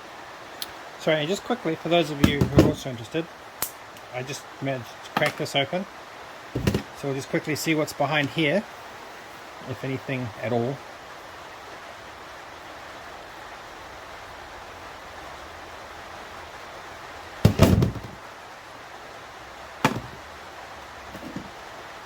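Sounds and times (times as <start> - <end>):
rain hissing: 0.0 - 22.0
metal parts knocking: 2.2 - 2.8, 6.6 - 6.9, 17.5 - 18.2, 19.8 - 20.2, 21.1 - 21.6.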